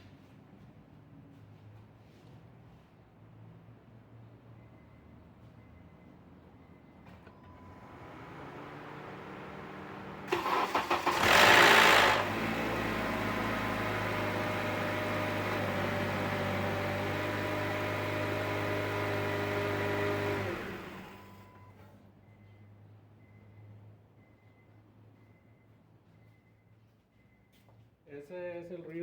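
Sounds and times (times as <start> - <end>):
engine start-up rattle: 7.2 - 21.4
car engine starter cranking: 7.4 - 17.1, 18.2 - 21.3
car engine idling: 7.6 - 21.3.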